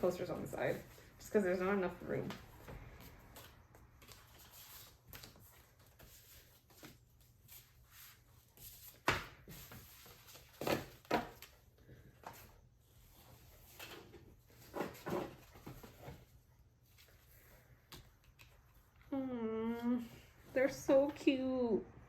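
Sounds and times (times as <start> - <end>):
paper rustling: 2.2 - 17.7.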